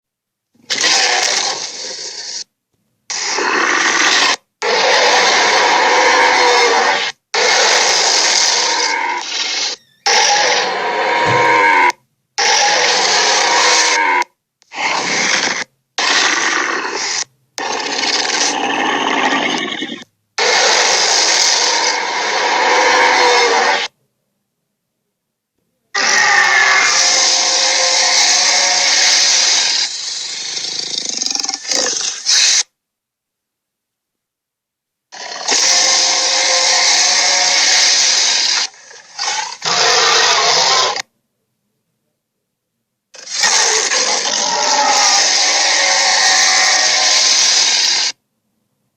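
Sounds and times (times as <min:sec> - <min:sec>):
dinosaur roaring: 0:03.2 - 0:14.2, 0:14.8 - 0:23.9, 0:26.0 - 0:32.6, 0:35.2 - 0:41.0, 0:43.2 - 0:48.2.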